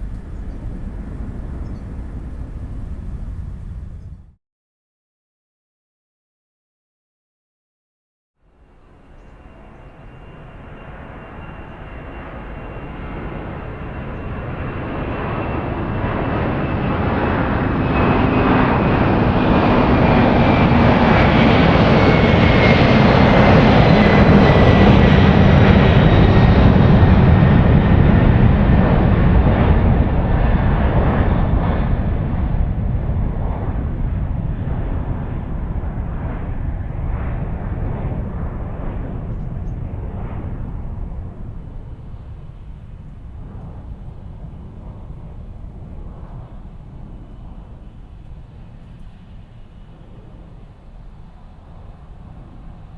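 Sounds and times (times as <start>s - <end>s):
high fan whine: 0.0s - 4.3s
jet engines heavy rumble: 0.0s - 4.4s, 8.6s - 52.9s.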